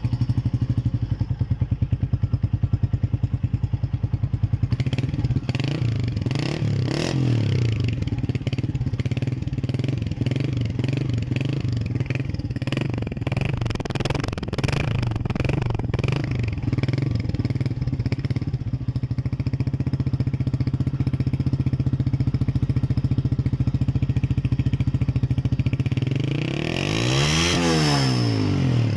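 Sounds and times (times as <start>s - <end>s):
motorcycle engine idling: 0.0s - 26.6s
motorcycle engine revving: 0.0s - 28.9s.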